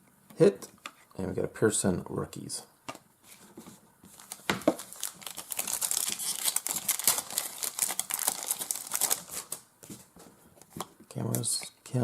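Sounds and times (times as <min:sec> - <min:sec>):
plastic wrapper crinkling and tearing: 0:04.1 - 0:09.6.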